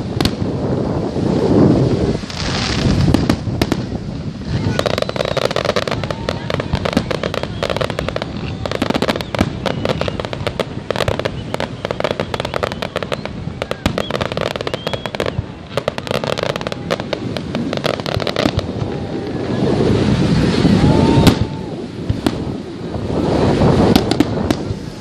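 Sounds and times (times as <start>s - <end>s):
fireworks crackling and popping: 0.0s - 25.0s.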